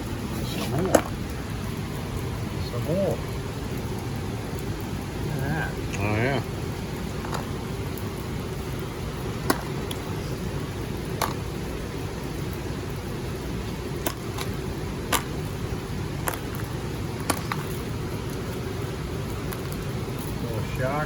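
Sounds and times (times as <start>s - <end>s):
steady rain: 0.0s - 21.0s
stones clicking when set down: 7.2s - 7.5s, 11.2s - 11.4s.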